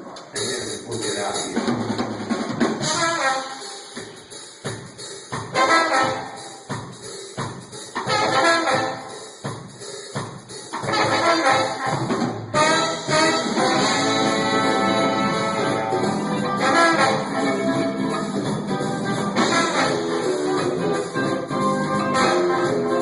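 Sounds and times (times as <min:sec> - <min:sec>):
horn section playing: 0:02.8 - 0:04.0, 0:05.5 - 0:06.7, 0:08.0 - 0:09.4, 0:10.8 - 0:23.0.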